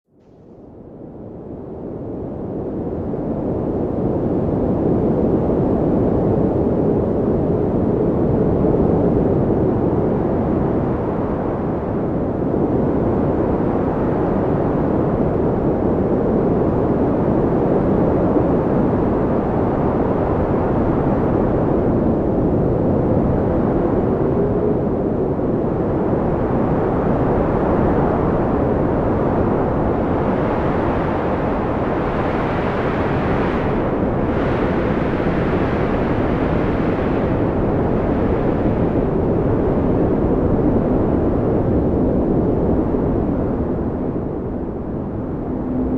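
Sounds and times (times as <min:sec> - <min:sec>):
storm wind blowing: 0:00.8 - 0:45.9.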